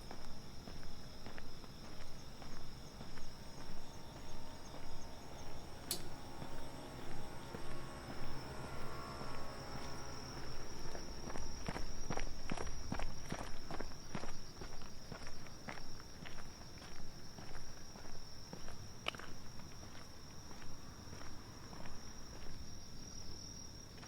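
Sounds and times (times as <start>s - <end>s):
footsteps: 0.0s - 22.6s
night insects chirring: 0.0s - 24.0s
sharp click: 5.8s - 6.2s.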